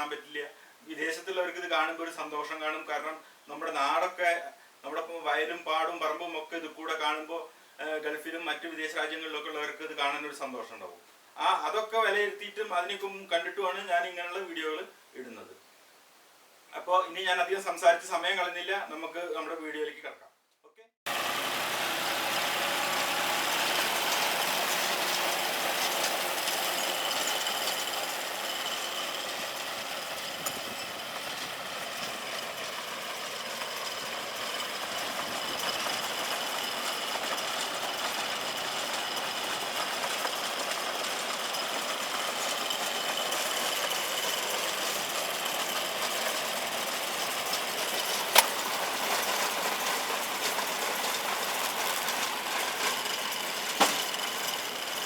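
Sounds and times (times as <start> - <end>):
baler machinery rattling: 21.1 - 55.0
tractor engine running: 21.1 - 55.0
sharp click: 48.3 - 48.6.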